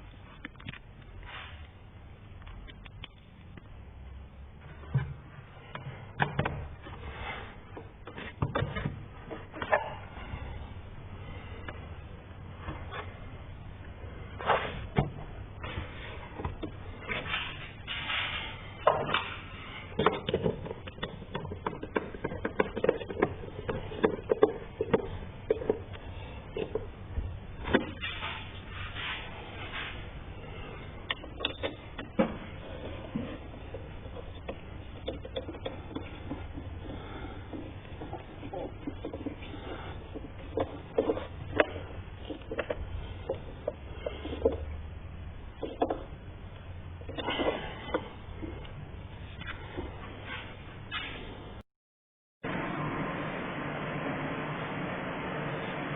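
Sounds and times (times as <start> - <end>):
low steady hum: 0.0 - 51.6
car parts clicking and knocking: 20.0 - 27.0, 31.1 - 44.8.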